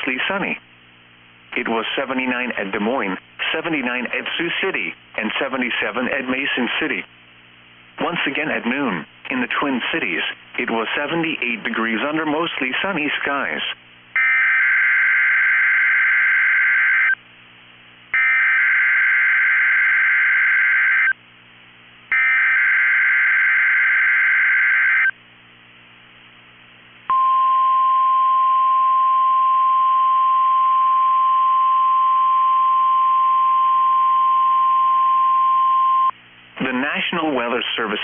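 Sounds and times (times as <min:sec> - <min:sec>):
steady warning alarm tone: 0:14.2 - 0:17.2, 0:18.2 - 0:21.2, 0:22.1 - 0:25.1.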